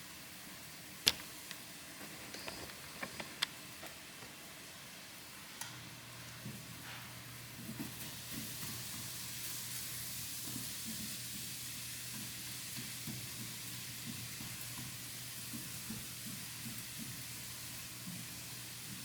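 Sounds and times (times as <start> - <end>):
meat sizzling with pops: 6.3 - 19.0.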